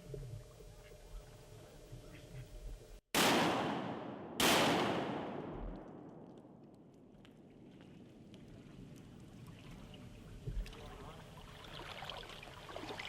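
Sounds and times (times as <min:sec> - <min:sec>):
shotgun shots: 0:03.1 - 0:06.6.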